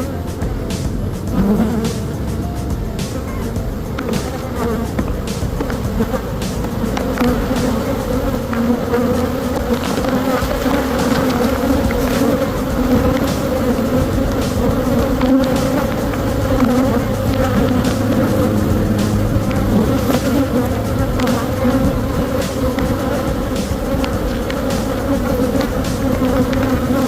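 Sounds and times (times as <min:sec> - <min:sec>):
honey bees buzzing: 0:00.0 - 0:27.0.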